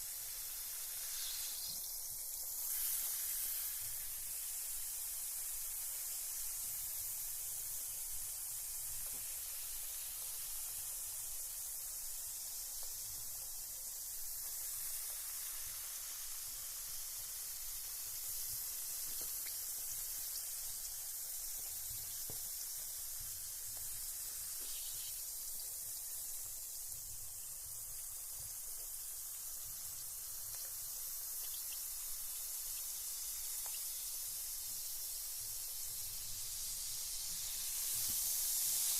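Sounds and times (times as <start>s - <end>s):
bath bomb fizzing: 0.0s - 38.9s
faint ticks: 32.6s - 34.0s.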